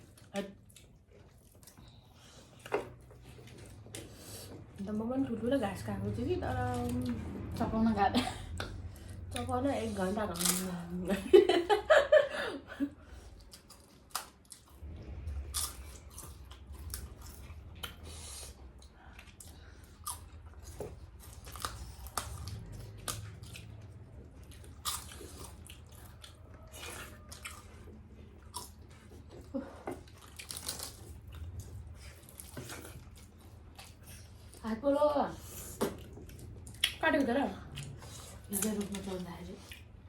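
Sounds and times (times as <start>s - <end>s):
people chewing food: 0.0s - 40.0s.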